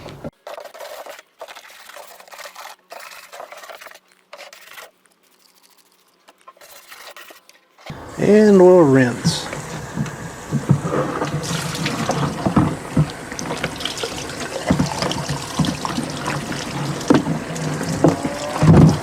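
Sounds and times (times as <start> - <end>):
tap water running: 7.9 - 19.0
tool knocking in sink: 9.2 - 19.0.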